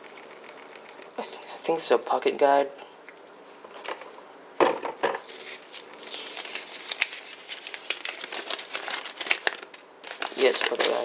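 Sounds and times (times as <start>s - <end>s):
paper rustling and crinkling: 5.1s - 11.0s
small crackles: 5.4s - 11.0s.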